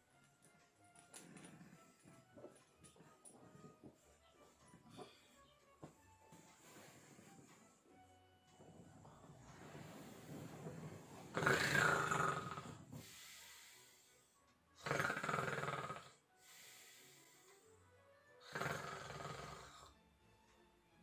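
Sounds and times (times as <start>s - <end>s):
quiet background music: 0.0s - 21.0s
man snoring: 10.6s - 13.0s, 14.8s - 16.3s, 18.4s - 20.0s.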